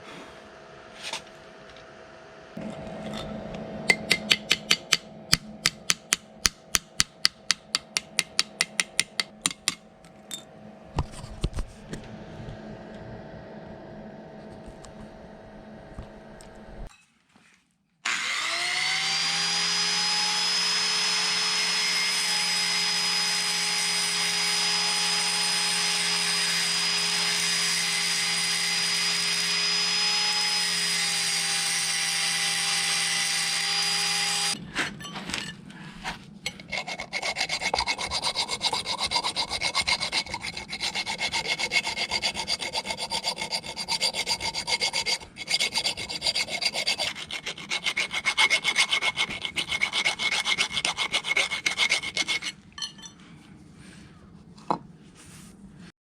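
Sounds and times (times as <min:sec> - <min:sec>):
power tool motor whining: 0:18.0 - 0:34.6
rasping scrape on metal: 0:36.0 - 0:53.2.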